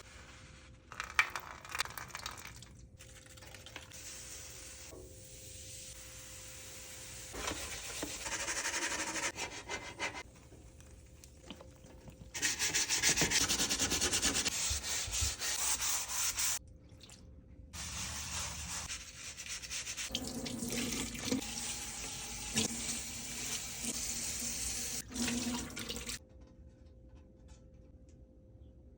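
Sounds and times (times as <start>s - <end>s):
tray being scrubbed: 7.4s - 10.3s, 12.4s - 16.6s.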